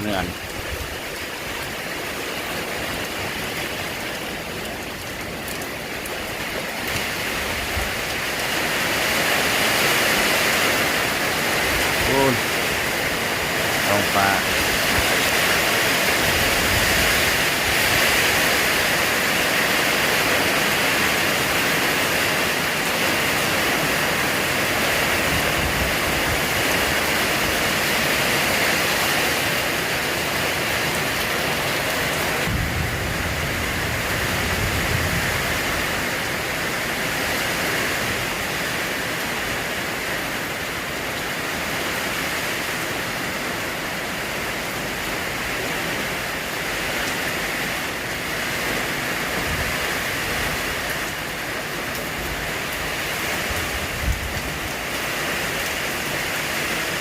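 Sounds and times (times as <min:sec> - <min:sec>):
steady rain pouring: 0:00.0 - 0:57.0.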